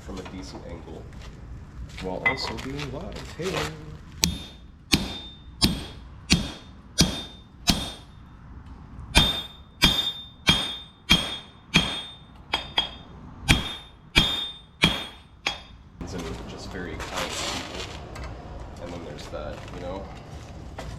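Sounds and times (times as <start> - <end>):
hammer striking steel on anvil: 4.2 - 8.2, 9.2 - 15.9.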